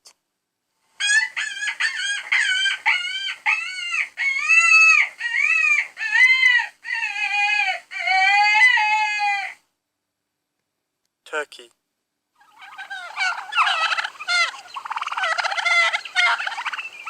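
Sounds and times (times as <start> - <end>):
rabbit squealing: 1.0 - 9.6, 12.4 - 17.0.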